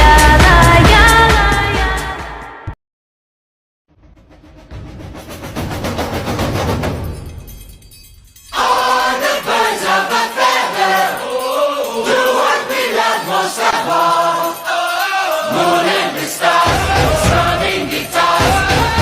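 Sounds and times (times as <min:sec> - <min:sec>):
heavy bass: 0:00.0 - 0:02.3
choir singing: 0:08.6 - 0:19.0.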